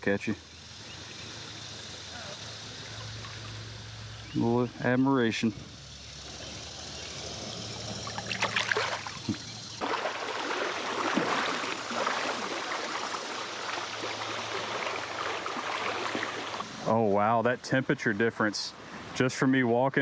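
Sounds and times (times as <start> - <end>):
creek water running: 0.0 - 20.0
water splashes: 2.2 - 3.8, 6.3 - 17.0.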